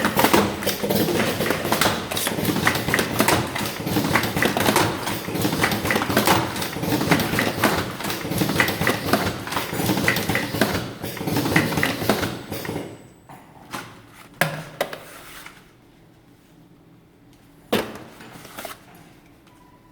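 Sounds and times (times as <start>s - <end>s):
machine clicks: 0.0s - 12.9s
packaging machine clattering: 0.0s - 13.0s.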